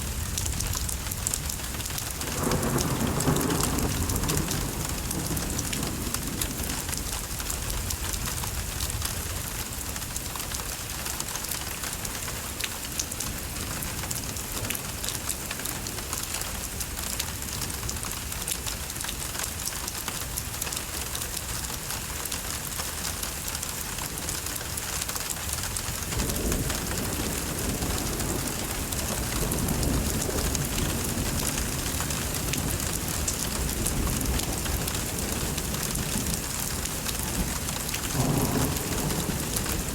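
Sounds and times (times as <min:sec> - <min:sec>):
rain falling steadily: 0:00.0 - 0:39.9
thunder rumbling: 0:02.1 - 0:07.9, 0:26.0 - 0:39.9.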